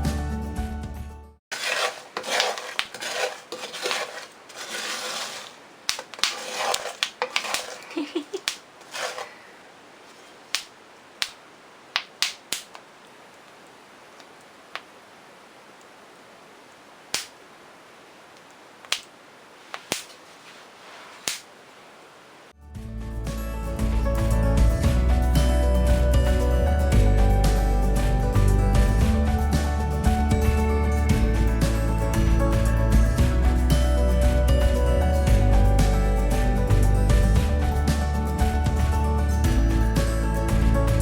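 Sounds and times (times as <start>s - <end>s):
rustling and crinkling: 1.5s - 14.9s, 18.2s - 22.1s
sharp clicks and taps: 10.5s - 11.4s, 12.0s - 12.8s, 18.8s - 19.1s.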